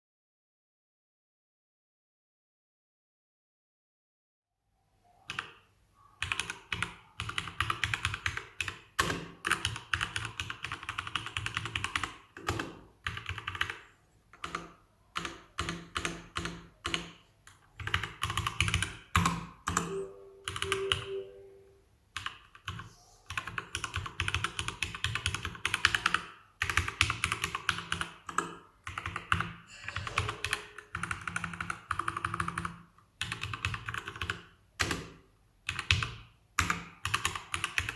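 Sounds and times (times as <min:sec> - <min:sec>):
fast mechanical keyboard typing: 0:06.2 - 0:13.8, 0:14.4 - 0:17.2, 0:17.8 - 0:21.1, 0:22.2 - 0:35.1, 0:35.7 - 0:37.9.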